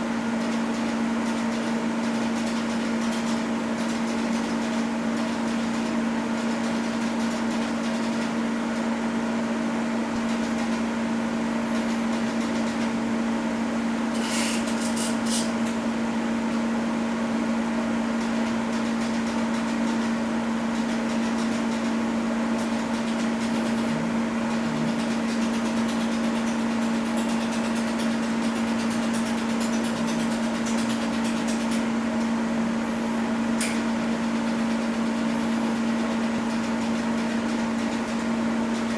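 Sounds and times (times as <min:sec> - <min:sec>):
electrical hum: 0:10.8 - 0:38.9.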